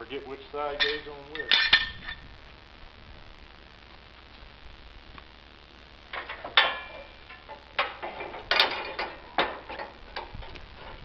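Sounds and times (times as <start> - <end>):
metal parts knocking and clinking: 6.1 - 11.0.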